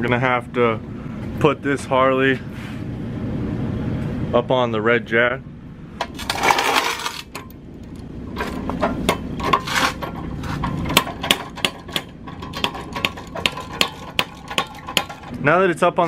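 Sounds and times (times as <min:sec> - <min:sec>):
shuffling and scraping: 0:08.3 - 0:10.8.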